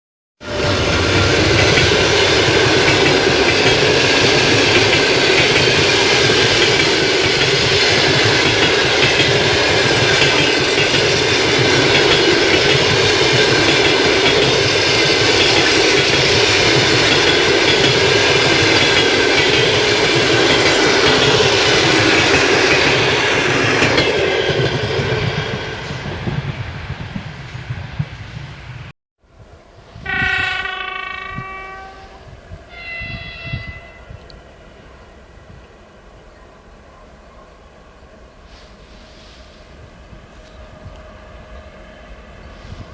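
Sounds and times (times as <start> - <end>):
train wheels clattering on rails: 0.6 - 28.1.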